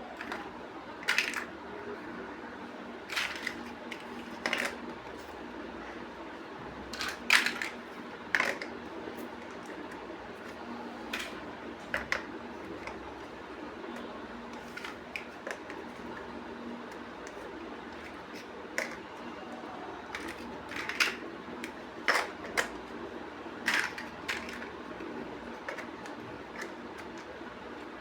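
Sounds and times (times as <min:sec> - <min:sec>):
plastic bricks clicking: 0:00.2 - 0:01.5.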